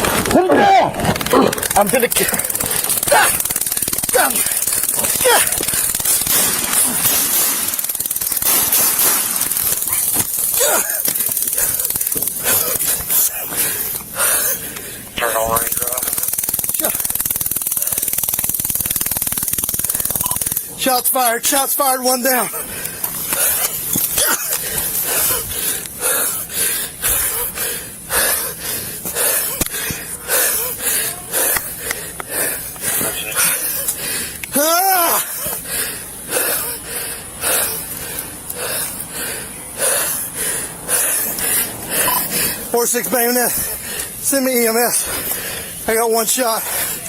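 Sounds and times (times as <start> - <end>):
heavy rasping wheezing breathing: 1.1 - 18.4, 21.8 - 47.0.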